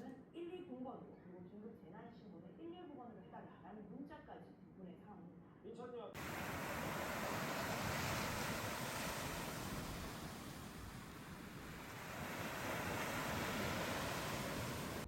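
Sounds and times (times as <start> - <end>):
ocean waves washing in: 6.2 - 15.0.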